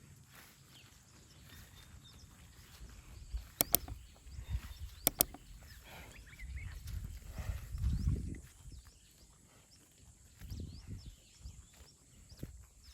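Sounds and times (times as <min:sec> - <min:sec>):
faint bird chirps: 0:01.4 - 0:07.0
sharp double clicks: 0:03.6 - 0:04.2, 0:05.1 - 0:05.5.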